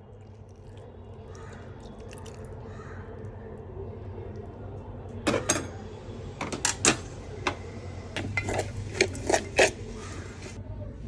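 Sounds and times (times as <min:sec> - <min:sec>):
utensils clinking against dish: 0:05.3 - 0:05.8, 0:06.4 - 0:07.6, 0:08.2 - 0:10.6.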